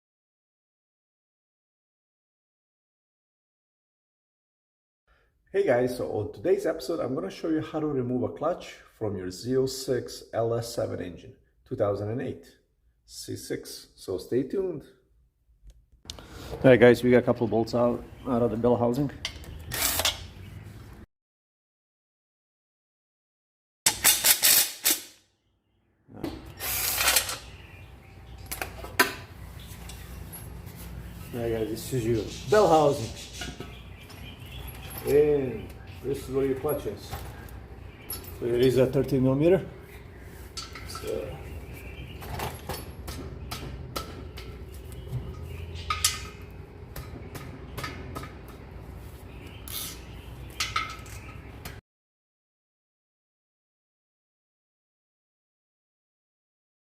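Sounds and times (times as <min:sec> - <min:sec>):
metal tools and bolts clinking: 0:33.4 - 0:35.4, 0:36.4 - 0:39.0, 0:40.5 - 0:41.3, 0:42.2 - 0:43.2, 0:50.6 - 0:51.4.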